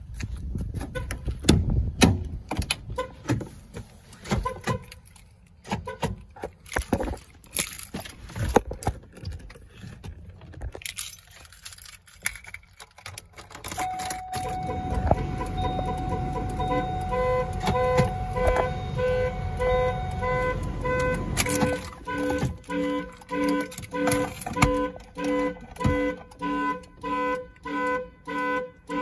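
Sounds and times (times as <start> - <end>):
clicks and knocks of handling: 0.2 - 15.2
keys jangling: 6.6 - 9.6, 10.6 - 14.7, 21.1 - 26.4.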